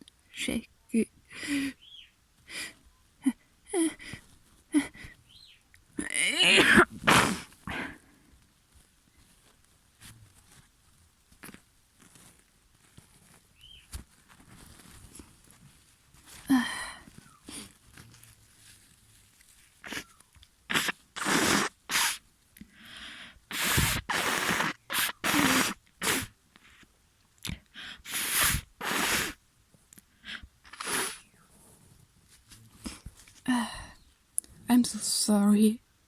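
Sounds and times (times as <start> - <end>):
person sneezing: 6.0 - 8.0, 19.8 - 20.1, 20.7 - 22.2, 23.5 - 26.3, 28.0 - 29.4, 30.3 - 31.2
nasal bursts and sniffs: 6.5 - 8.0, 19.8 - 26.9, 27.5 - 29.4, 30.1 - 31.3.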